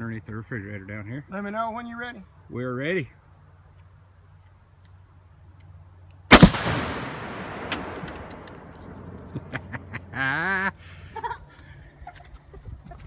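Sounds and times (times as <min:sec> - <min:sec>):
explosive double crack: 0:06.3 - 0:10.1
rumbling echo: 0:06.3 - 0:10.3.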